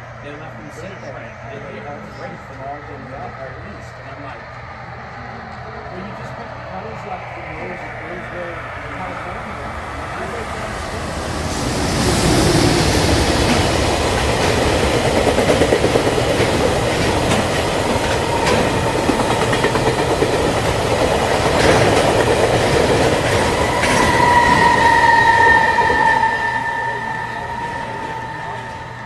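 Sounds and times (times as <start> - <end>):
freight train rolling past: 0.0 - 29.0
high-pitched tone: 23.6 - 29.0.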